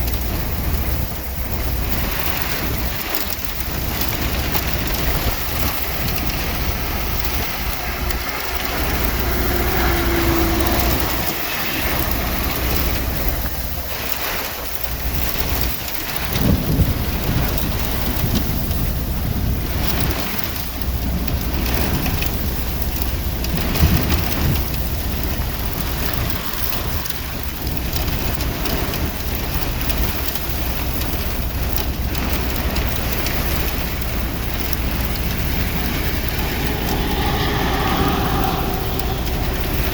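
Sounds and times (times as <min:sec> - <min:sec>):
heavy rain pouring: 0:00.0 - 0:39.9
low rumble: 0:03.6 - 0:13.9, 0:34.0 - 0:39.9.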